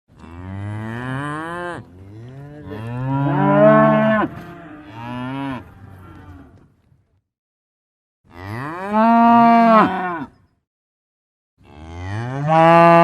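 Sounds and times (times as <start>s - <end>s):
cow mooing: 0.1s - 6.6s, 8.3s - 10.4s, 11.6s - 13.0s.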